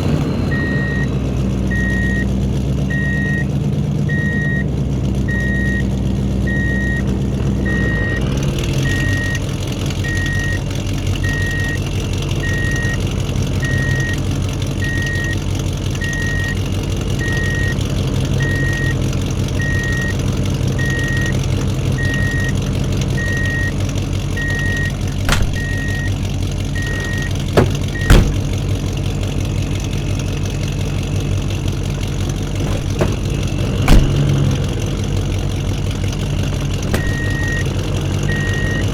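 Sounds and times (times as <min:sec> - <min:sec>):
truck engine idling: 0:00.0 - 0:38.9
reversing alarm beeping: 0:00.5 - 0:01.1, 0:01.7 - 0:02.3, 0:02.9 - 0:03.5, 0:04.1 - 0:04.6, 0:05.3 - 0:05.8, 0:10.0 - 0:10.6, 0:11.2 - 0:11.8, 0:16.0 - 0:16.6, 0:17.2 - 0:17.8, 0:18.4 - 0:19.0, 0:23.2 - 0:23.8, 0:24.4 - 0:26.2, 0:26.8 - 0:28.4, 0:37.0 - 0:37.7, 0:38.3 - 0:38.9
sharp clicks or knocks: 0:25.2 - 0:25.7, 0:36.9 - 0:37.4.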